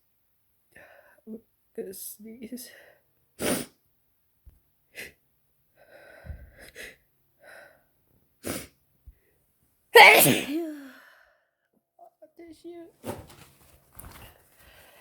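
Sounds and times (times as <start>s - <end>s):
person sniffing: 10.0s - 10.9s
person sneezing: 10.0s - 11.0s.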